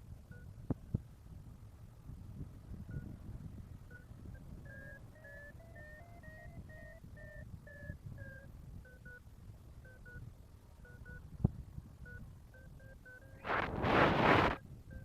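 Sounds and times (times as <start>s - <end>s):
wind gust on microphone: 0.5s - 9.2s, 11.0s - 15.0s
electronic beeps: 3.9s - 9.2s, 9.8s - 10.2s, 10.8s - 11.2s, 12.0s - 15.0s.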